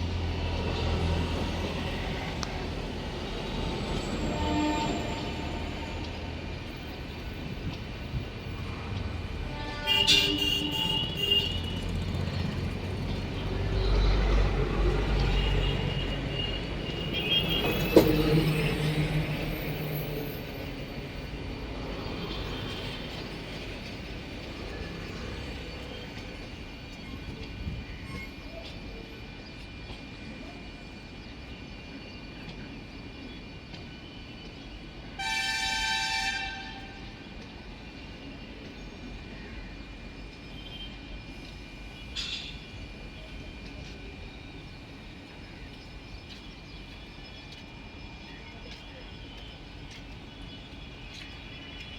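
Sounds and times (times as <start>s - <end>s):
train rumbling along track: 0.0s - 51.9s
train horn blast: 3.8s - 6.4s, 9.2s - 12.1s, 35.2s - 37.2s.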